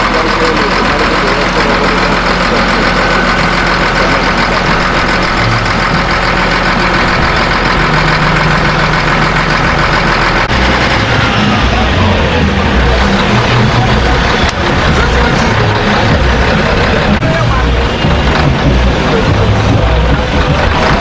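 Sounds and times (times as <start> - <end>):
vehicle engine running: 0.0 - 21.0.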